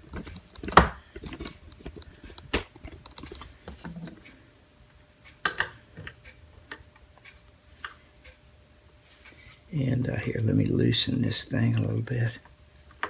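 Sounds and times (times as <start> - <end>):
camera tripod clicks and rattles: 0.1 - 3.5.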